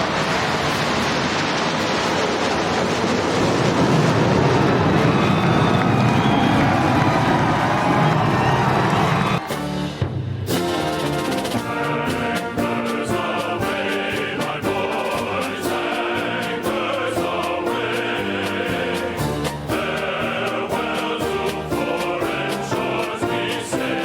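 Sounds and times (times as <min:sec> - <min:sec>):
instrumental accompaniment with beat: 0:09.4 - 0:24.0
choir singing: 0:10.6 - 0:24.0.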